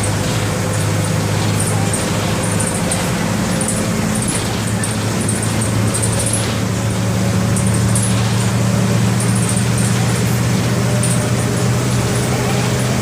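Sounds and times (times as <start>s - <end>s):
bus diesel engine running: 0.0s - 13.0s
road noise: 0.0s - 13.0s.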